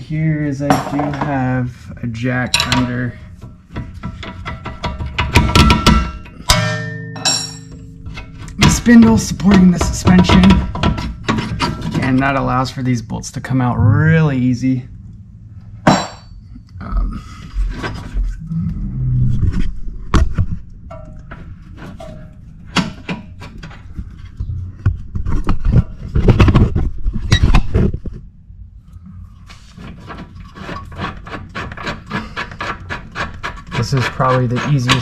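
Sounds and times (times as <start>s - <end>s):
metal knocks clanks and scrapes: 0.6s - 13.0s, 17.4s - 18.4s, 19.5s - 28.2s, 29.5s - 35.0s.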